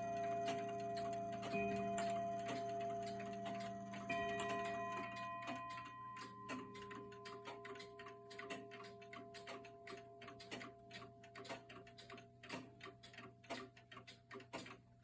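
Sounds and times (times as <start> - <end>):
chime rods ringing: 0.0 - 8.3
mantel clock ticking: 0.0 - 15.0.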